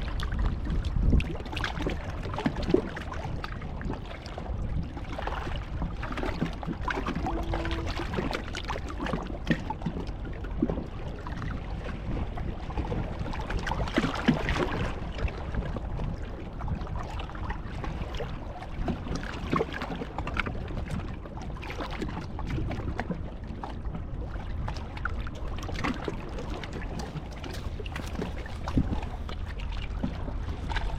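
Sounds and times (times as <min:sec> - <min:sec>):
wind buffeting the microphone: 0:00.0 - 0:30.9.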